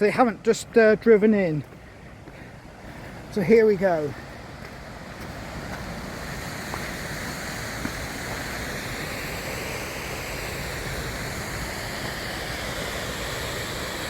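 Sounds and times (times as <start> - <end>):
waterfall rushing: 2.8 - 14.0.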